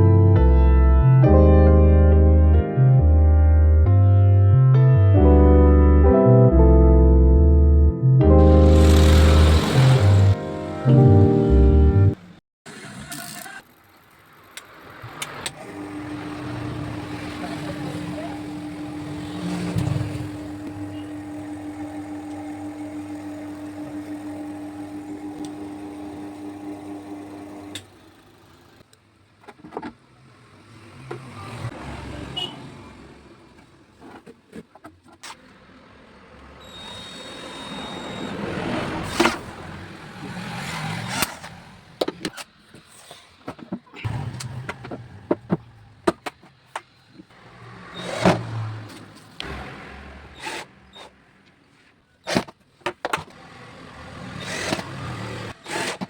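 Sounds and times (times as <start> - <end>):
motor humming: 8.4 - 10.4, 15.4 - 28.2
knocks clicks and clatter: 41.1 - 47.3.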